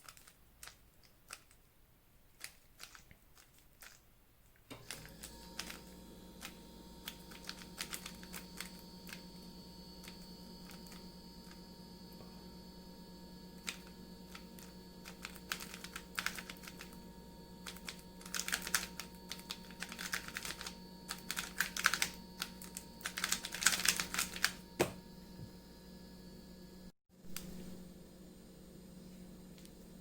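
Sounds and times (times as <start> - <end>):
plastic puzzle cube clicking: 0.0 - 1.6, 2.4 - 4.0, 17.7 - 22.2.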